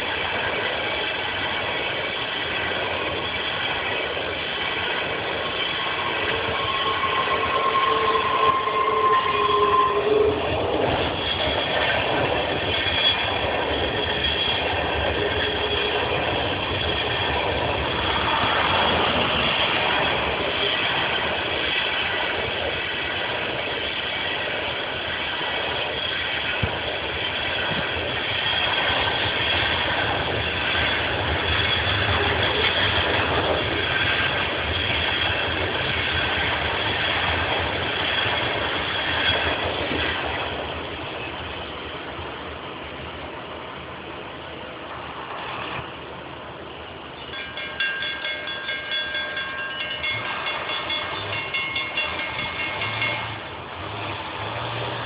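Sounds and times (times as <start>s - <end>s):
train wheels rumbling on rail: 0.0s - 55.0s
steady high tones: 47.2s - 53.6s.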